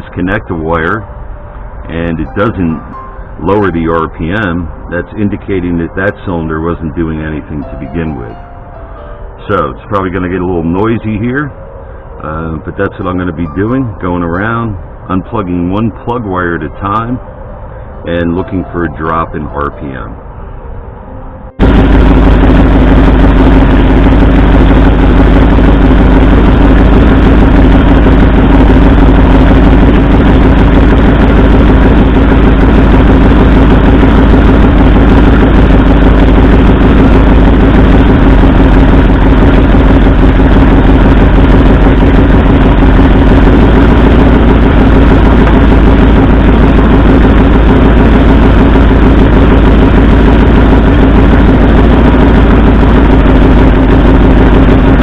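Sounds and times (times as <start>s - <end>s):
engine idling and misfiring: 21.6s - 55.0s.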